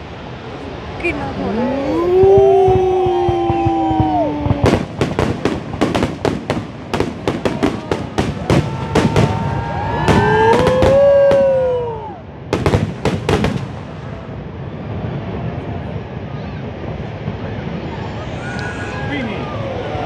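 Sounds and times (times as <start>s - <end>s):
fireworks bangs and crackles: 0.0s - 20.0s.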